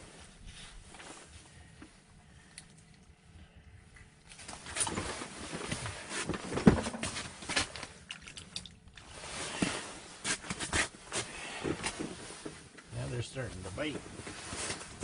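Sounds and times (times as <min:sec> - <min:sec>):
rustling and clattering handling noises: 0:03.8 - 0:15.0.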